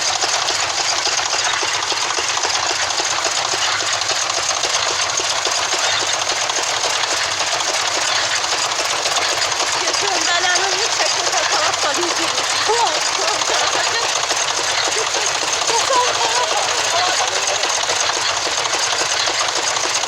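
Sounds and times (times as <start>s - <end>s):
threshing machine rattling: 0.0s - 20.0s.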